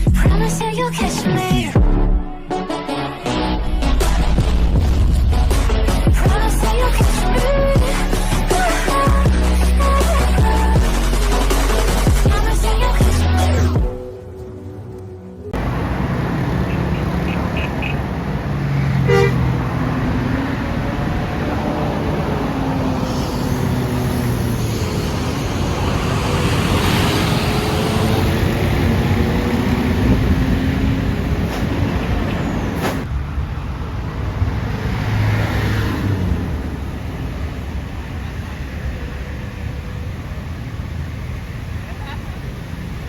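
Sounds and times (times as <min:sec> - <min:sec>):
buses and vehicles passing: 0:00.0 - 0:43.0
short horn toot: 0:19.1 - 0:19.4.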